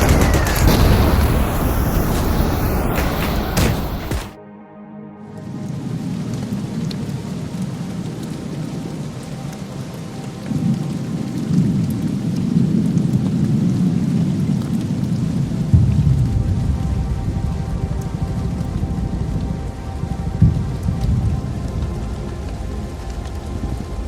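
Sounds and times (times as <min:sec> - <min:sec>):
low rolling rumble: 0:00.0 - 0:04.4
steady rain: 0:00.0 - 0:04.4, 0:05.5 - 0:24.0.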